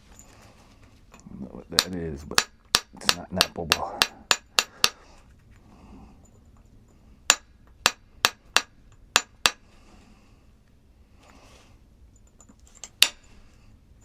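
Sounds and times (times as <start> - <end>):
hard object tapping knocks: 1.8 - 5.0.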